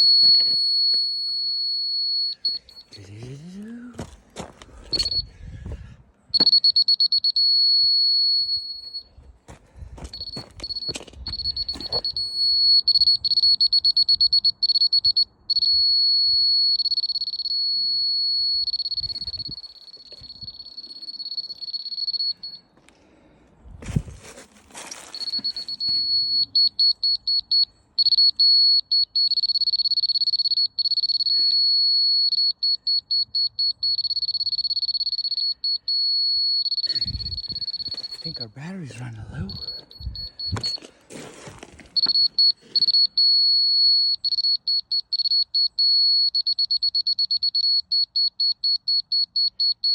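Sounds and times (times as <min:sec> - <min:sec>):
electronic alarm buzzer: 0:00.0 - 0:03.0, 0:04.9 - 0:05.3, 0:10.1 - 0:22.6, 0:25.2 - 0:38.4, 0:39.4 - 0:40.9, 0:41.9 - 0:49.9.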